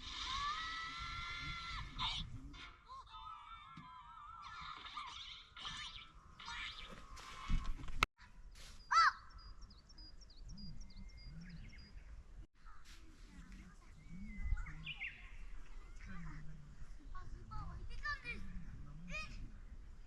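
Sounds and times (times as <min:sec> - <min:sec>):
high repeated bird chirps: 0:04.5 - 0:07.5, 0:08.7 - 0:12.1
wild birds calling: 0:08.8 - 0:17.5.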